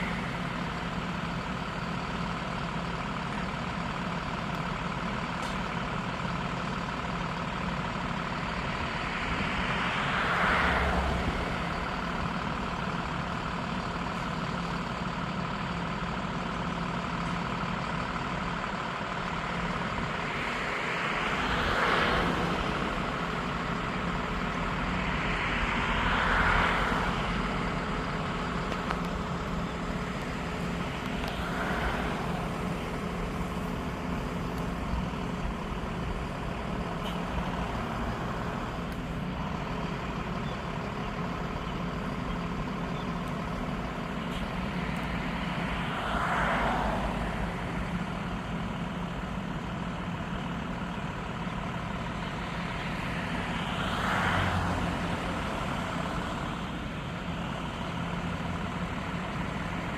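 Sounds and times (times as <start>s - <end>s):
engine idling hum: 0.0s - 59.9s
vehicle passing by: 8.8s - 12.1s, 20.2s - 27.9s, 44.7s - 48.0s, 52.4s - 56.7s.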